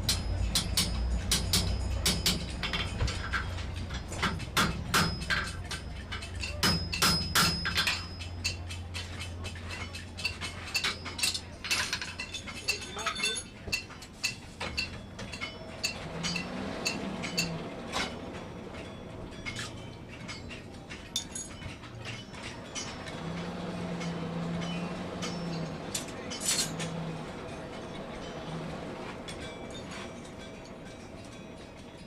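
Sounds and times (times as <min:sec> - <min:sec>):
steel striking steel: 0:00.0 - 0:13.0.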